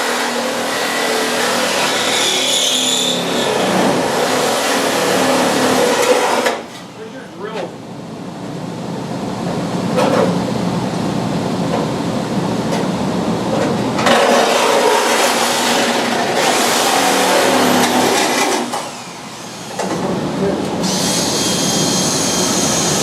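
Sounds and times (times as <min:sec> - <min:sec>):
power tool on sheet metal: 0:00.0 - 0:06.7, 0:14.0 - 0:23.0.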